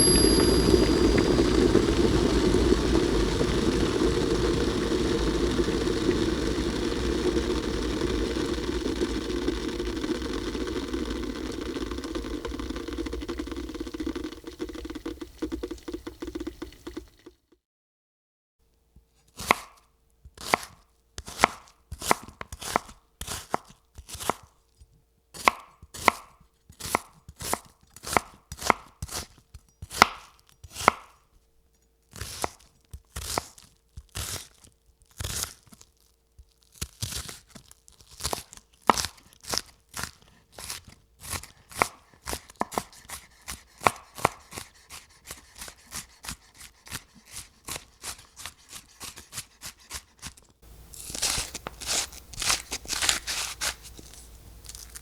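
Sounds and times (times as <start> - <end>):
knife chopping food: 20.4 - 24.5, 25.4 - 29.3, 29.9 - 31.1, 38.2 - 54.0.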